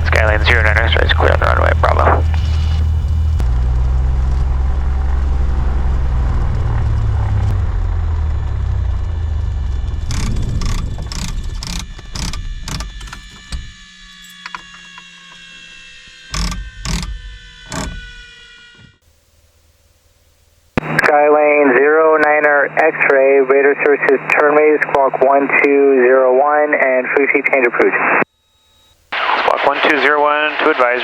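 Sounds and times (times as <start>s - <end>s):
aircraft piston engine idling: 0.0s - 3.4s, 7.7s - 18.6s
faint steady whine: 0.0s - 3.9s, 7.6s - 31.0s
sharp clicks and knocks: 10.1s - 15.5s, 16.3s - 18.9s.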